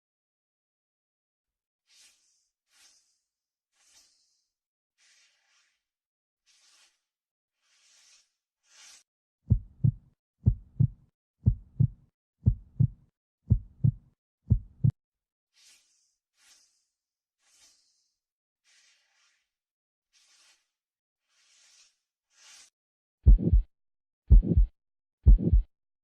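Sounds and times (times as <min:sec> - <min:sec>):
heartbeat thumps: 0:09.5 - 0:14.9, 0:23.3 - 0:23.7, 0:24.3 - 0:25.7.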